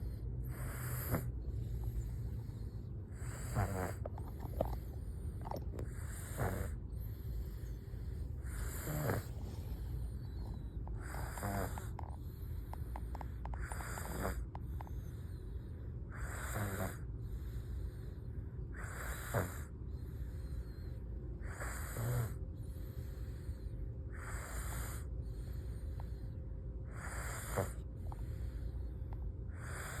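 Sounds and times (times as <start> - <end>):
steady low hum: 0.0 - 30.0
person snoring: 3.1 - 4.8, 5.4 - 6.8, 8.4 - 9.6, 11.0 - 12.0.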